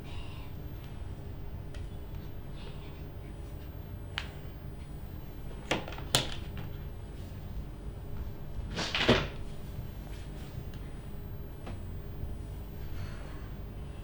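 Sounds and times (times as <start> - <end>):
low room hum: 0.0 - 14.0.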